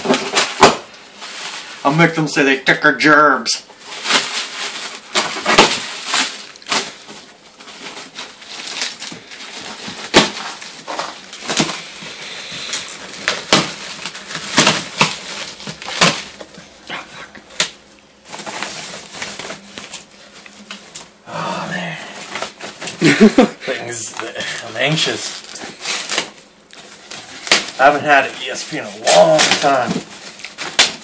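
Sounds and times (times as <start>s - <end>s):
cardboard box crackling and rustling: 3.9s - 16.8s, 18.2s - 20.7s.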